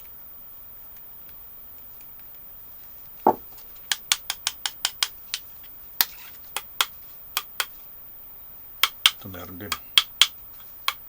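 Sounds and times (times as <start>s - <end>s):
soft thump: 3.3s - 3.5s
metal cells clicking together: 3.5s - 7.8s, 8.8s - 11.0s.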